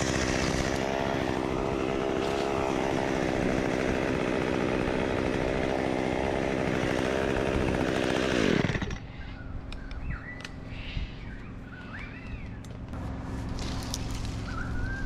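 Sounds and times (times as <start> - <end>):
chainsaw revving and idling: 0.0 - 9.1.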